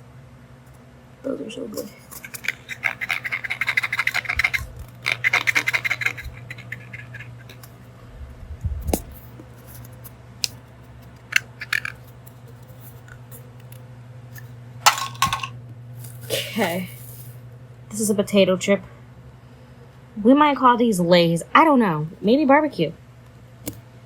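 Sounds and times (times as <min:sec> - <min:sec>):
plastic pieces clicking together: 0:11.2 - 0:12.1, 0:14.9 - 0:16.3
plastic toy pieces rustling: 0:11.2 - 0:13.0, 0:14.9 - 0:17.4.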